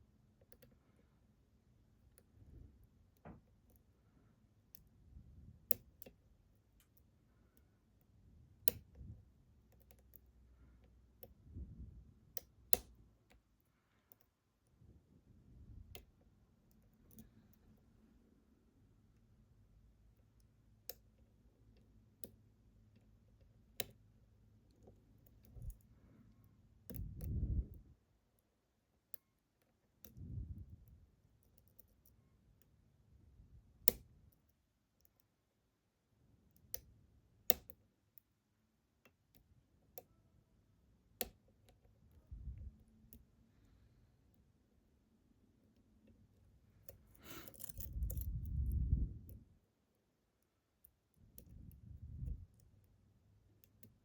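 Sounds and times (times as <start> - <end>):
dull low bumps of lock handling: 46.8 - 49.4.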